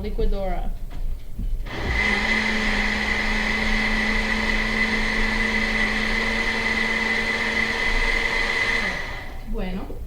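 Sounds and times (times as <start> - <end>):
kitchen blender running: 1.7 - 9.6.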